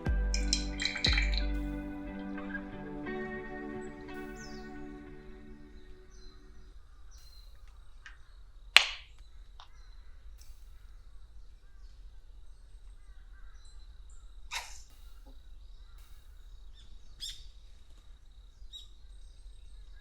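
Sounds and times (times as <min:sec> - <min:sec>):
guitar music: 0:00.0 - 0:06.6.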